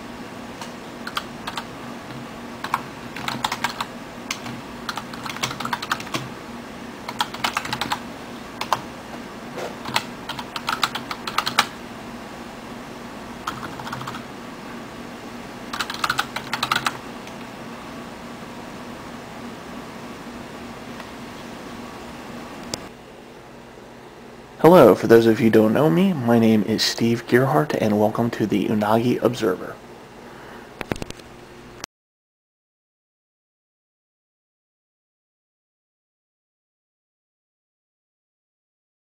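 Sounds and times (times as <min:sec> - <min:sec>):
steady low hum: 0:00.0 - 0:31.9
computer keyboard typing: 0:01.0 - 0:01.7, 0:02.6 - 0:06.3, 0:07.1 - 0:08.0, 0:08.6 - 0:08.8, 0:09.8 - 0:11.8, 0:13.4 - 0:14.3, 0:15.7 - 0:17.0.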